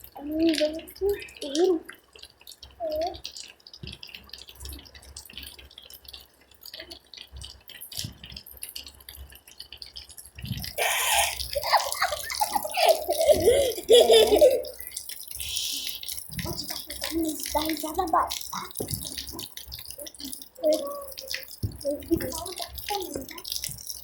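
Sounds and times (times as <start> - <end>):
raindrops dripping: 0.0 - 24.0
rushing splashing water: 9.9 - 24.0
person's voice: 10.8 - 14.8, 15.4 - 23.5.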